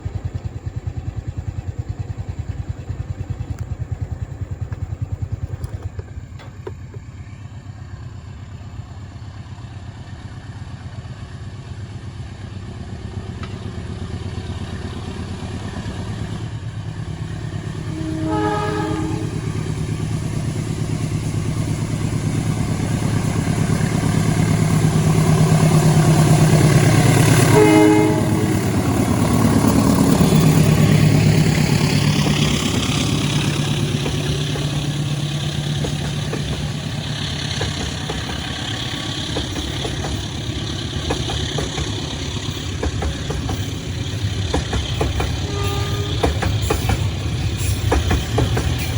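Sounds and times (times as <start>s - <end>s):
train rumble: 0.0s - 48.9s
train horn toots: 17.8s - 19.7s, 27.3s - 29.4s, 45.3s - 46.8s.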